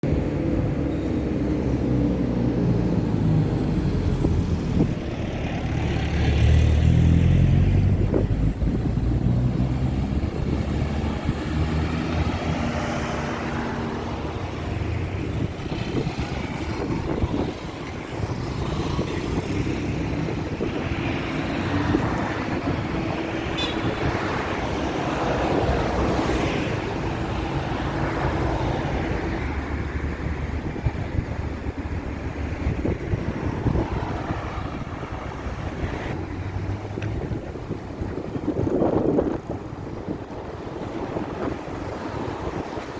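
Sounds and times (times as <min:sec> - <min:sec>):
cars and trucks passing: 0:00.0 - 0:42.9
brief high squeak: 0:03.6 - 0:04.5.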